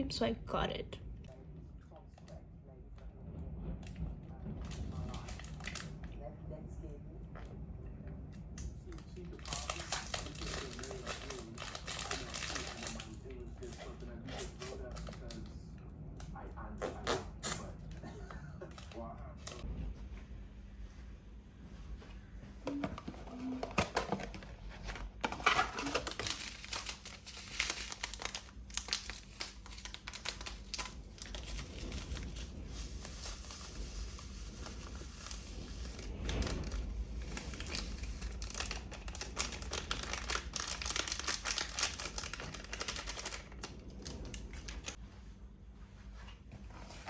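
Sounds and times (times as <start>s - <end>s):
packaging crinkled and torn: 4.6s - 6.2s, 8.9s - 15.6s, 23.4s - 45.0s.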